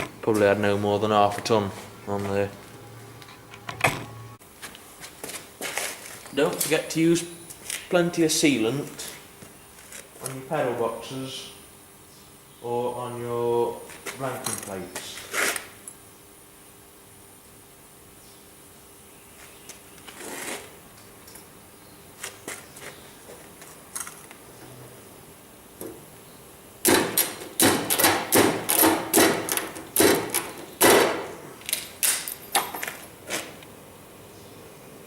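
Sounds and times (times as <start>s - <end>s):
sharp loud knocks: 26.8s - 31.4s.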